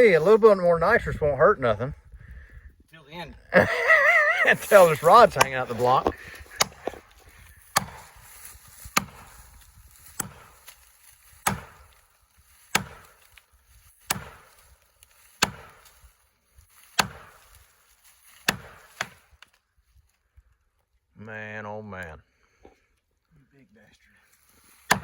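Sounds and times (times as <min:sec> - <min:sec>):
hammer striking wedge: 0:07.8 - 0:08.1, 0:10.2 - 0:10.4, 0:12.7 - 0:13.1, 0:14.1 - 0:14.4, 0:15.4 - 0:15.7, 0:17.0 - 0:17.3.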